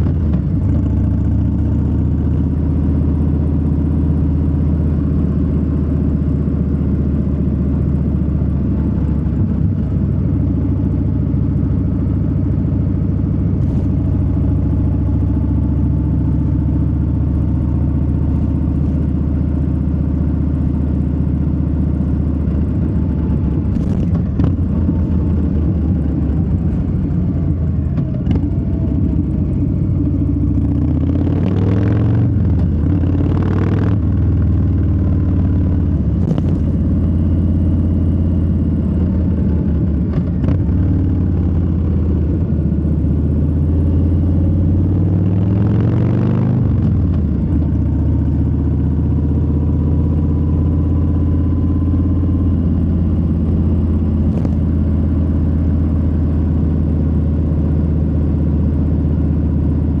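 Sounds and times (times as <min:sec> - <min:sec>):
motorcycle engine revving: 0:13.3 - 0:59.9.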